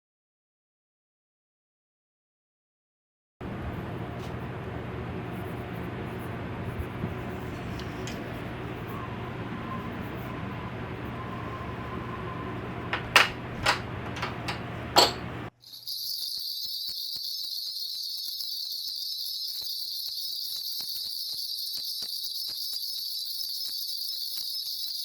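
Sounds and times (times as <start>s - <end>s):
low room hum: 3.4s - 15.5s
high-pitched chirring: 14.3s - 25.0s.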